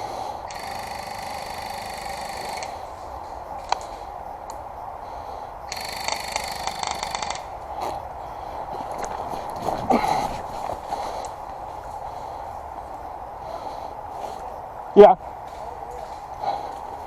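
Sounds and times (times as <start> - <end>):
airsoft gun rattling bursts: 0.5 - 2.8, 5.7 - 7.5.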